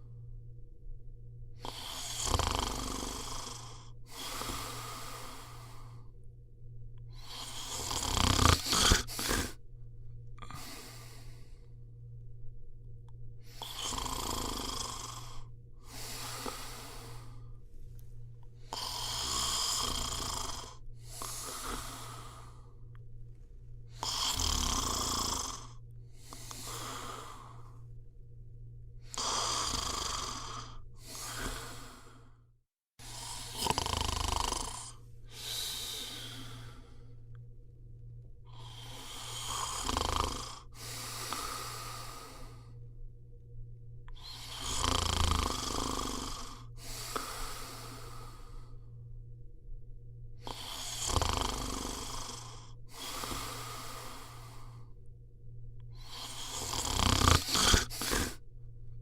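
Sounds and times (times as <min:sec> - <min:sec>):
steady low hum: 0:00.0 - 0:59.0
person snoring: 0:01.6 - 0:06.1, 0:07.1 - 0:09.6, 0:10.4 - 0:11.7, 0:13.4 - 0:17.6, 0:18.5 - 0:22.9, 0:23.9 - 0:27.9, 0:29.0 - 0:32.4, 0:33.0 - 0:37.4, 0:38.5 - 0:42.8, 0:44.1 - 0:48.9, 0:50.4 - 0:55.0, 0:55.9 - 0:58.5.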